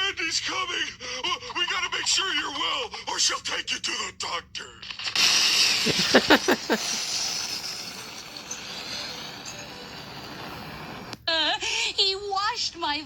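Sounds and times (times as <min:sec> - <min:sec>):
hiss: 0:05.0 - 0:11.2.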